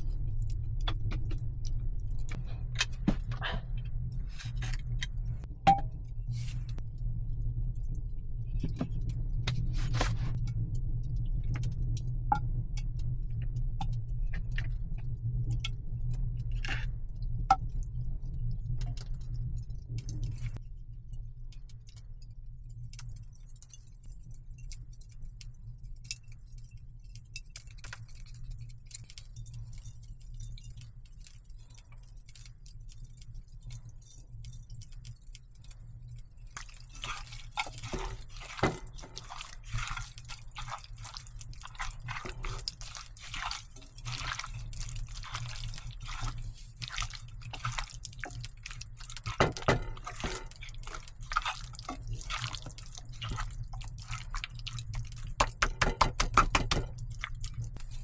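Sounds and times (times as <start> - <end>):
steady low rumble: 0.0 - 20.6.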